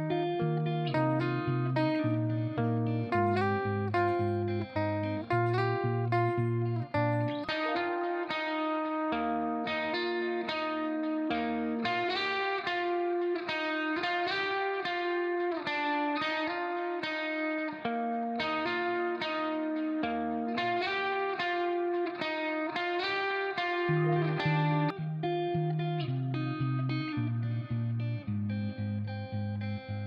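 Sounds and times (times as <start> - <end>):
plucked guitar melody: 0.0 - 30.0
bass line: 1.0 - 7.4.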